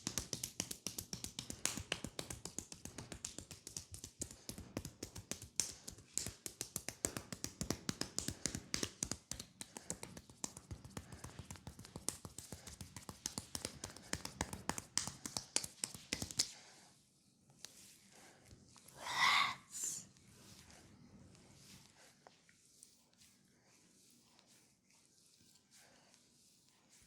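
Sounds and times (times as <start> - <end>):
hands slapping on a leg: 0.0 - 16.7.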